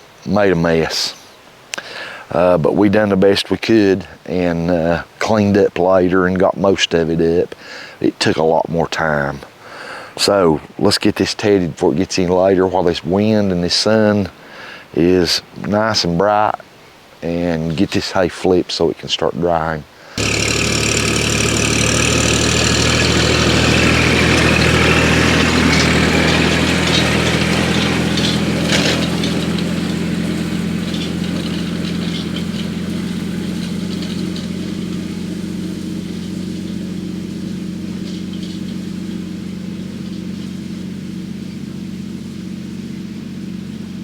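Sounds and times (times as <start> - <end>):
machinery clatter and whine: 20.2 - 44.0
tractor diesel engine running: 20.2 - 44.0.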